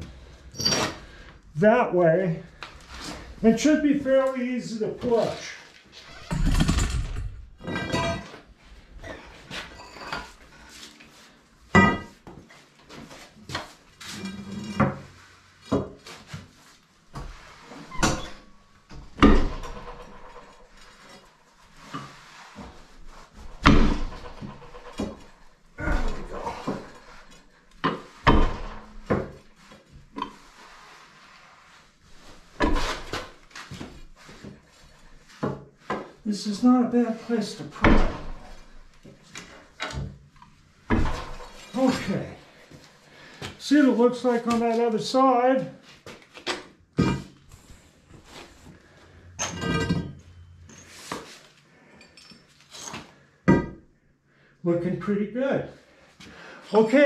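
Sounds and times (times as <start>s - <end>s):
short metal squeaks: 0.5s - 1.0s.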